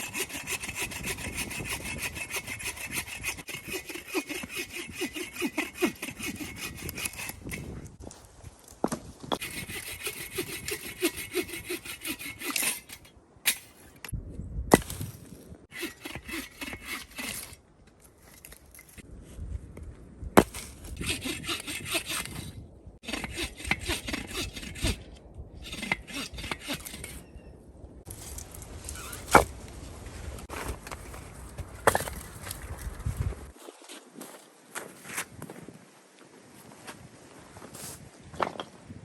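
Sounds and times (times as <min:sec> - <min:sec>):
hand saw cutting firewood: 0:00.0 - 0:08.0, 0:09.3 - 0:14.1, 0:15.7 - 0:17.6, 0:20.4 - 0:27.3, 0:31.8 - 0:32.6.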